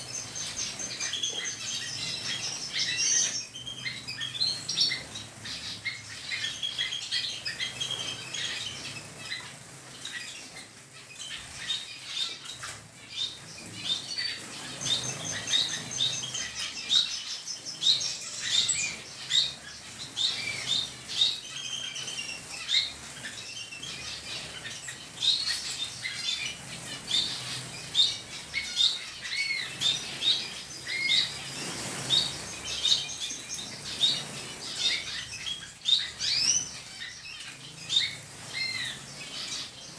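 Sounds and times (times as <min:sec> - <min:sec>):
small birds chirping: 0:00.0 - 0:39.9
wings fluttering: 0:21.9 - 0:39.9.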